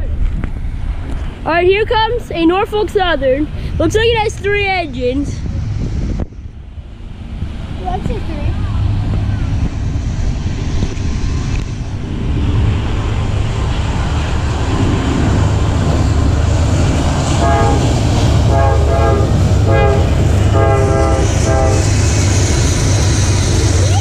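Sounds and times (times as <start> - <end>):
train rumbling: 0.0 - 24.0
locomotive horn blasts: 17.4 - 22.0.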